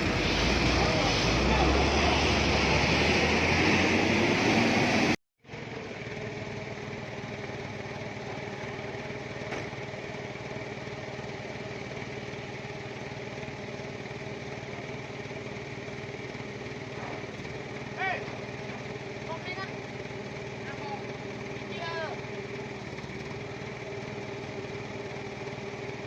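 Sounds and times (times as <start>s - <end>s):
loud rushing noise: 0.0s - 5.2s
vehicle engine running steadily: 0.0s - 26.0s.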